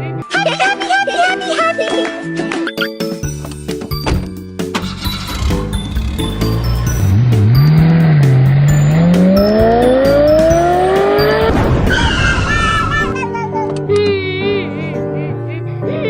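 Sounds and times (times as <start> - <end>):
background music: 0.0 - 16.0
car engine revving: 4.7 - 11.7
tyre squeal: 11.8 - 13.1.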